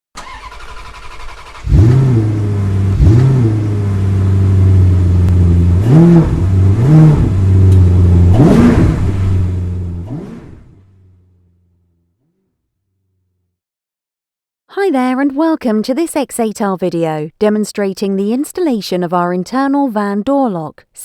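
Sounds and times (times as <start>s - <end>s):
vehicle engine idling and revving: 0.2s - 12.4s.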